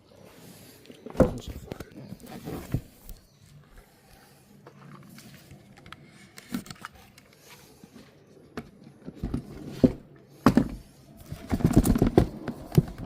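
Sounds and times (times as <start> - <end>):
cardboard box rustling and scraping: 1.2 - 3.2, 9.2 - 13.0.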